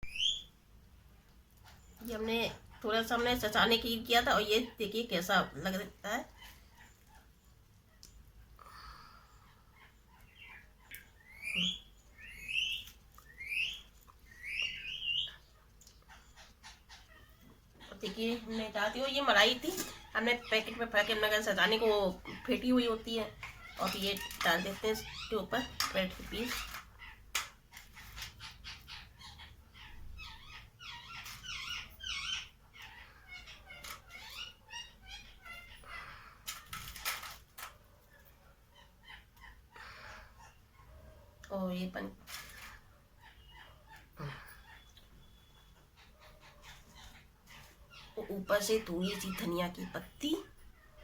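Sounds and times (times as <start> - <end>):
bird chirping: 0.0 - 0.6, 1.6 - 37.4, 38.3 - 51.0
small animal squeaky calls: 9.5 - 37.1, 42.3 - 51.0.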